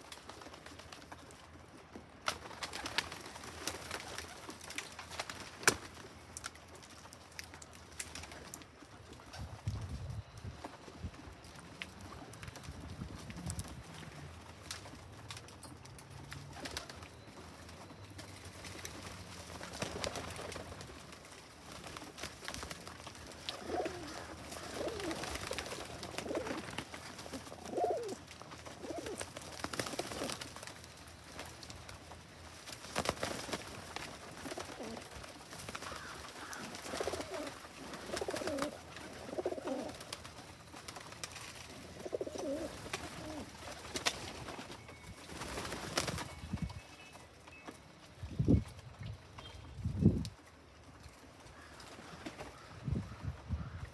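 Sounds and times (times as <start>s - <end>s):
pigeons cooing: 18.8s - 30.5s, 34.0s - 44.6s.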